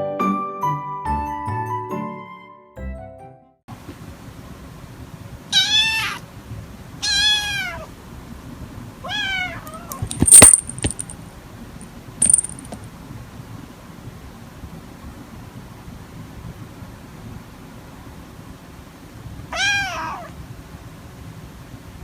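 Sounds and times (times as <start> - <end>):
kitten meowing: 5.6 - 6.2, 7.0 - 7.9, 9.0 - 10.0, 19.5 - 20.3.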